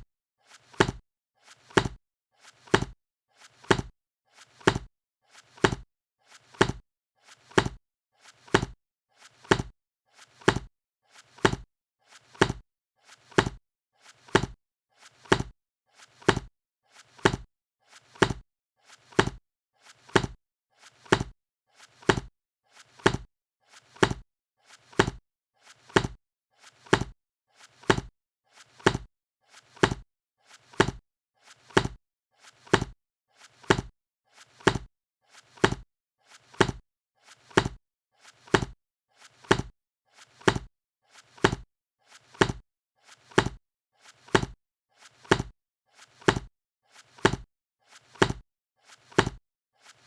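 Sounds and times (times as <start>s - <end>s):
book covers thudding shut: 2.7s - 2.9s, 7.6s - 7.8s, 12.4s - 12.6s, 17.2s - 17.4s, 18.2s - 18.4s, 32.7s - 32.9s, 37.6s - 37.8s, 38.5s - 38.7s, 42.4s - 42.6s, 47.2s - 47.4s, 48.2s - 48.4s, 49.2s - 49.4s.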